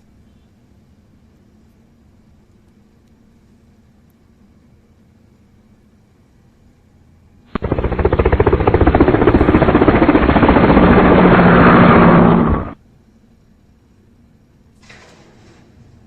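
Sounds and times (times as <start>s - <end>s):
rapidly pulsing engine: 7.5s - 12.8s.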